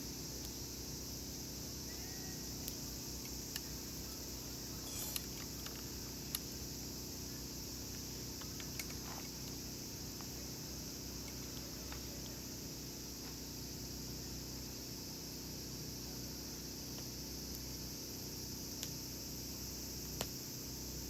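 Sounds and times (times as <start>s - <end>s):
steady high hiss: 0.0s - 21.0s
campfire crackling: 2.4s - 15.0s, 16.7s - 20.6s
burning wood popping: 7.8s - 10.5s.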